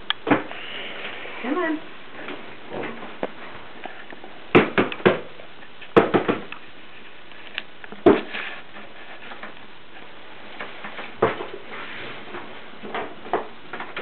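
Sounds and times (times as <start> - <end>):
sharp knocks and clatters: 4.5 - 5.3, 5.9 - 6.5, 8.0 - 9.6.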